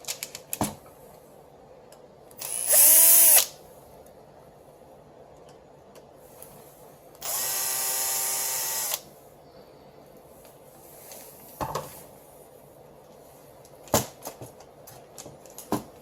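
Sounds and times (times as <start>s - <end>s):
electric drill motor whirring: 2.4s - 3.5s, 7.2s - 9.0s.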